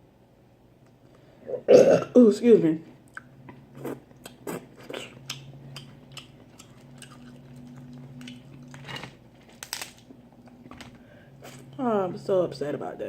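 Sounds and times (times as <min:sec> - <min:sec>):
wet chewing and lip-smacking: 0:03.1 - 0:08.8
crab shell cracking: 0:09.4 - 0:10.1.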